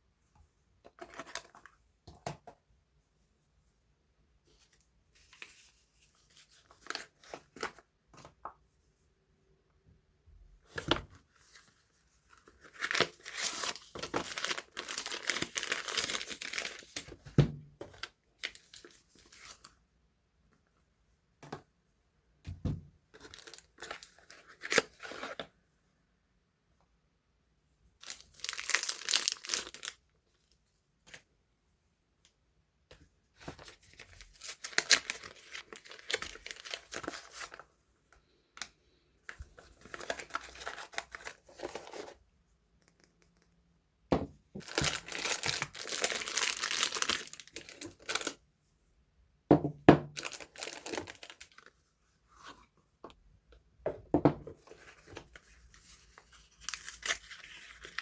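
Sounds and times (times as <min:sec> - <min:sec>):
packaging tearing and crinkling: 0:12.5 - 0:17.1, 0:28.0 - 0:30.0, 0:33.9 - 0:37.6, 0:44.6 - 0:48.4, 0:50.2 - 0:51.7, 0:56.4 - 0:58.0.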